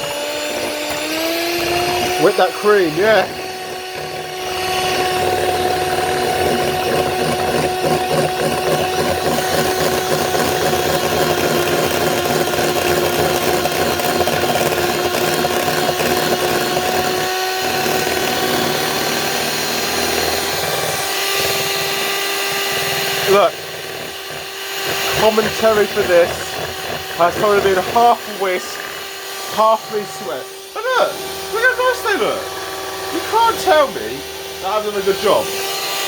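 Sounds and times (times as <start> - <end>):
electric hand mixer whining: 0.0 - 36.0.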